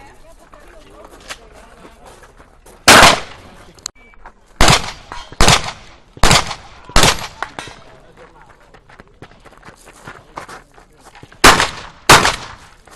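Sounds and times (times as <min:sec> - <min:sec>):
shotgun shots: 0:02.9 - 0:03.4, 0:04.6 - 0:07.8, 0:11.4 - 0:12.7.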